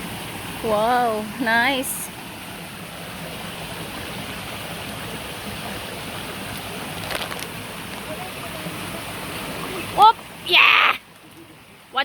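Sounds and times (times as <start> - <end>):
stream rushing over rocks: 0.0 - 12.0.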